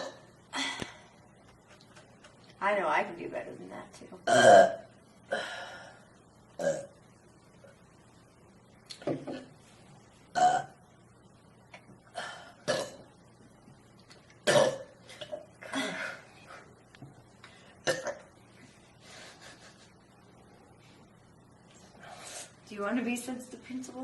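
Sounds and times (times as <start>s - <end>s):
person burping: 0.0s - 0.3s, 4.2s - 5.5s, 6.6s - 7.0s, 10.3s - 10.8s, 12.1s - 13.1s, 14.4s - 16.1s, 17.8s - 18.3s.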